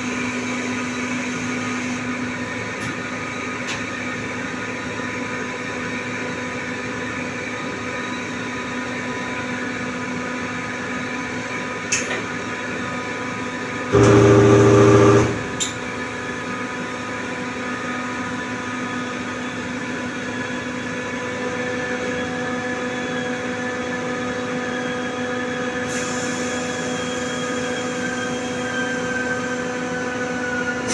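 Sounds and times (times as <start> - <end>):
deep compressor burst: 13.9 - 16.1
compressor humming: 13.9 - 16.2.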